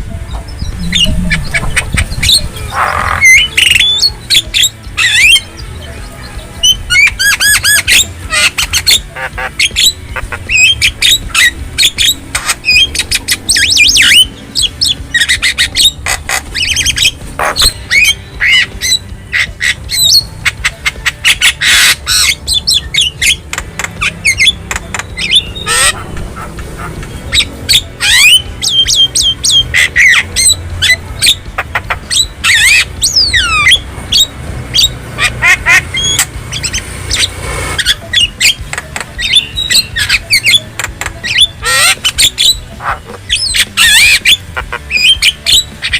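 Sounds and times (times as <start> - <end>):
myna squawks and whistles: 0.6 - 4.1.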